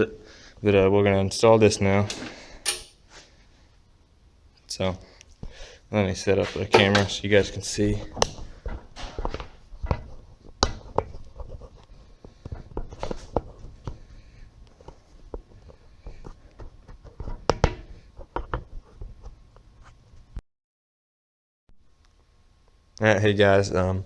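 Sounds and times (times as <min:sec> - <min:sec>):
handling clicks and knocks: 0:02.0 - 0:03.0, 0:06.5 - 0:07.3.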